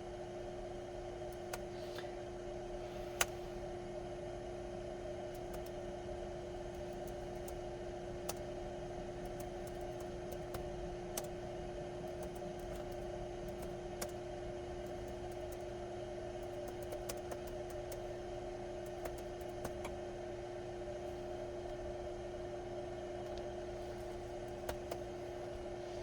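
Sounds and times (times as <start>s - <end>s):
steady machine hum: 0.0s - 26.0s
keyboard key clicks: 24.5s - 25.0s.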